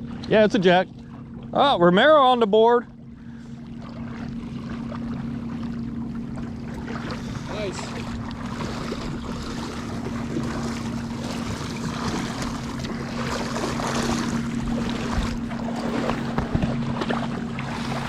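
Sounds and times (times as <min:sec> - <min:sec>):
water noise: 0:00.0 - 0:18.0
motor idling: 0:03.0 - 0:18.0
wind buffeting microphone: 0:07.9 - 0:18.0
low knocks: 0:14.8 - 0:16.8.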